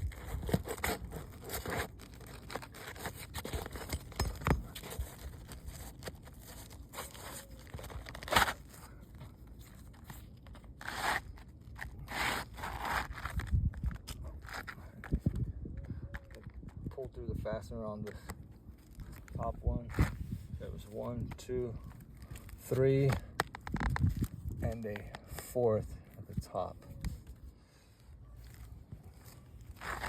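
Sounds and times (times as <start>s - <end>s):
shingles scraping and tearing: 0.0s - 15.1s, 29.1s - 30.0s.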